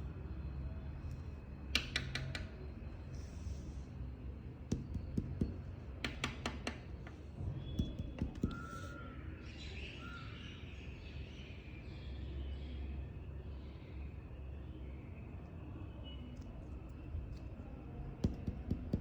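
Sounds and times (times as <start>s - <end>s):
sharp knocks: 4.7s - 8.7s, 18.2s - 19.0s.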